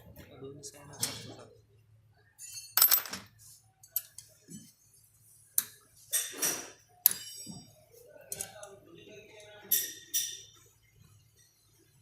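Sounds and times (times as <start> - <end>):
metal tools clinking and rattling: 2.4 - 4.7.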